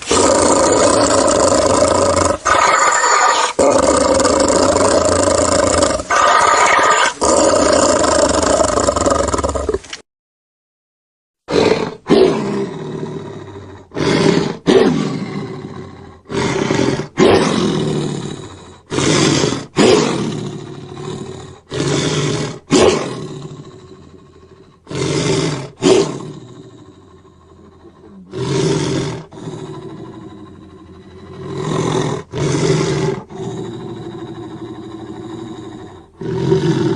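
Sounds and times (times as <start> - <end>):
creature roaring with echo: 0.0 - 9.8, 11.5 - 36.9.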